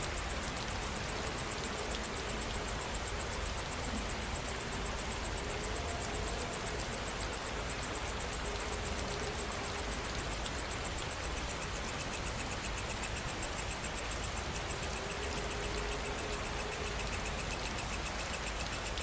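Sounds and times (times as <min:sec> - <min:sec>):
insects chirping in fast pulse: 0:00.0 - 0:19.0
lower pulsing insect call: 0:00.0 - 0:19.0
steady rain falling: 0:00.0 - 0:19.0.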